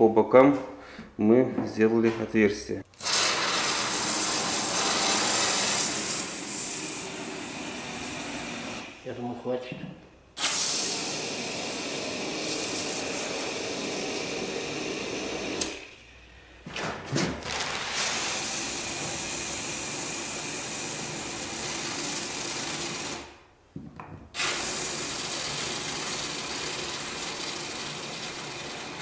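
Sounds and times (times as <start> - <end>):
electric drill drilling wood: 3.0 - 9.0, 10.4 - 15.9, 17.4 - 23.4, 24.4 - 29.0.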